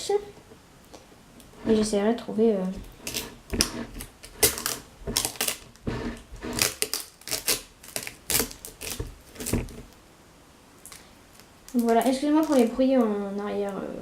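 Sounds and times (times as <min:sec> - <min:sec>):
plastic rustling: 0:02.7 - 0:10.0, 0:10.8 - 0:13.7
sticky tape ripping: 0:02.8 - 0:09.9.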